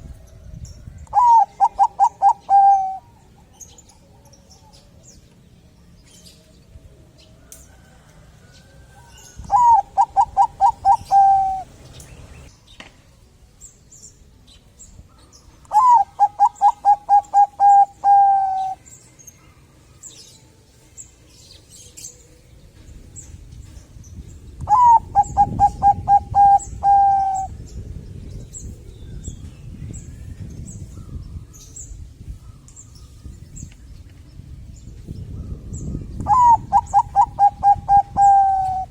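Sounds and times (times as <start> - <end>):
dove cooing song: 0.0 - 5.0, 8.8 - 11.8, 15.7 - 18.9, 24.6 - 29.4, 35.4 - 38.9.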